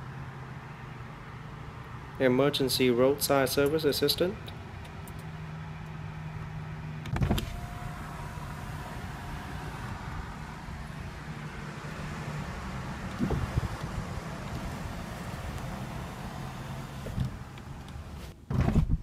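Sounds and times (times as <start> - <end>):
low steady hum: 0.0 - 19.0
electric motor whirring: 7.2 - 18.1.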